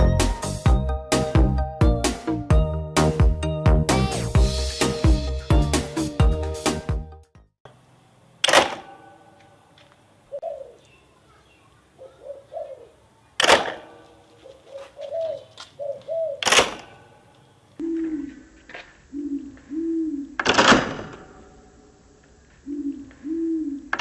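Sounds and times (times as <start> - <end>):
pigeons cooing: 10.3 - 11.4, 12.0 - 13.3, 14.0 - 17.2, 17.8 - 20.4, 22.5 - 24.0.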